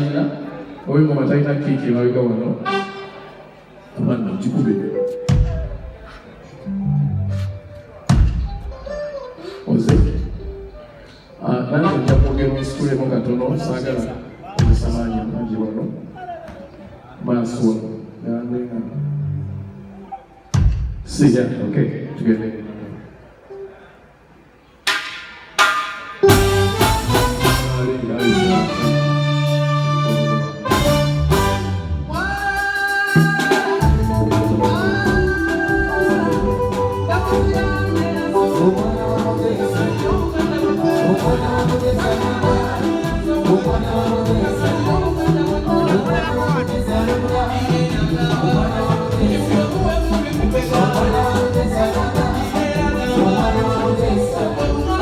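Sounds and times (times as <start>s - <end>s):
live band with drums and bass: 5.1s - 6.2s, 7.3s - 11.0s, 11.9s - 12.9s, 14.6s - 15.4s, 24.8s - 55.0s
held lead melody: 25.8s - 32.4s, 33.1s - 55.0s
struck guitar chords: 26.2s - 32.2s, 33.8s - 55.0s.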